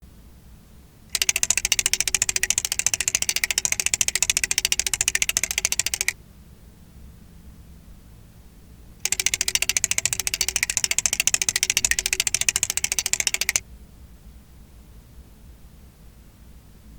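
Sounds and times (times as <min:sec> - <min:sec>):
flip-dot display clicking: 0:01.1 - 0:06.2, 0:09.0 - 0:13.6.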